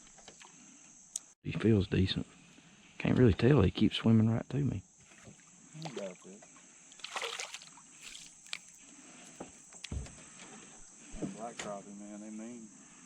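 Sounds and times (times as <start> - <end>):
water splashing and sloshing: 5.0 - 9.5.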